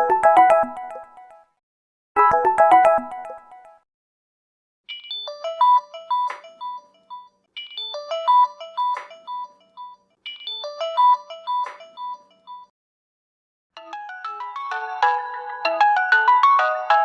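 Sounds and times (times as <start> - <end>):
phone alarm melody: 2.2 - 3.8.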